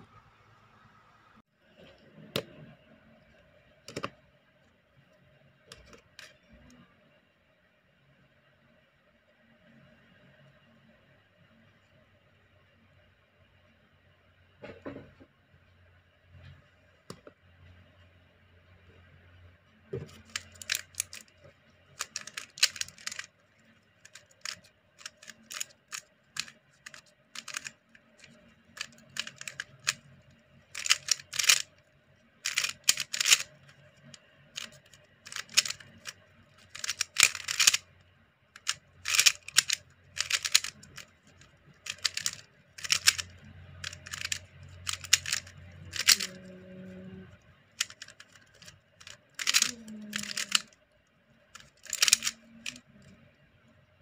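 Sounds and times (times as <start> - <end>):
speed cube plastic clacks: 3.8 - 4.2, 5.7 - 6.8, 19.9 - 46.6, 47.3 - 53.4.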